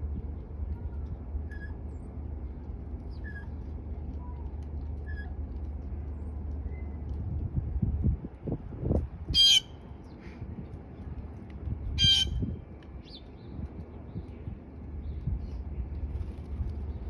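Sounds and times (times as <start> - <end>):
steady low rumble: 0.0 - 17.0
blue jay squawk: 9.4 - 9.7, 12.0 - 12.4.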